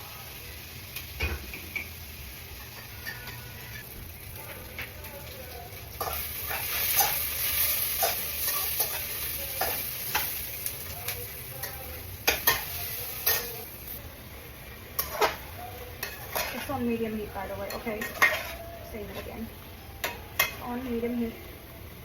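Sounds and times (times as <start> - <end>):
onions sizzling in oil: 0.0 - 22.0.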